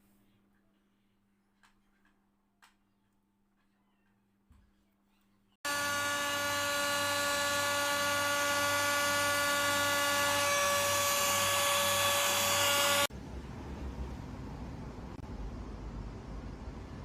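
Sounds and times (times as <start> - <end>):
vacuum cleaner motor whine: 5.6 - 13.1.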